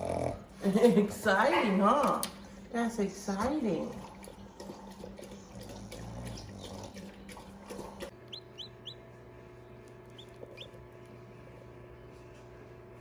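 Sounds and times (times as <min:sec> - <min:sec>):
steady low hum: 0:00.0 - 0:13.0
chicks peeping: 0:08.3 - 0:09.0, 0:10.1 - 0:10.8.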